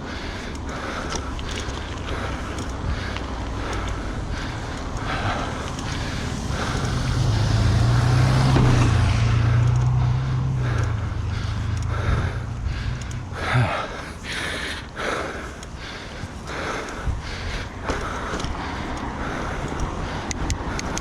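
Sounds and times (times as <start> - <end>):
bike road rumble: 0.0 - 21.0
heavy breathing: 0.0 - 21.0
wind: 0.0 - 21.0.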